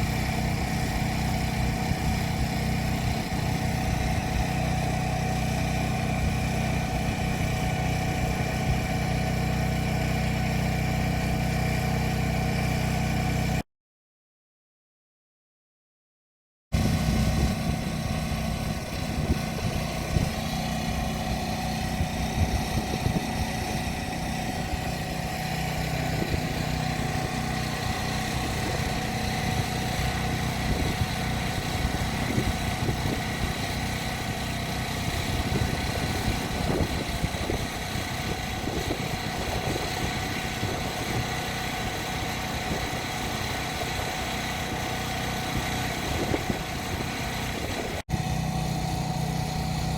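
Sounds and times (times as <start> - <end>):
engine running steadily: 0.0 - 13.6, 16.8 - 49.9
wind buffeting microphone: 16.8 - 25.1, 26.0 - 43.1, 45.5 - 48.1.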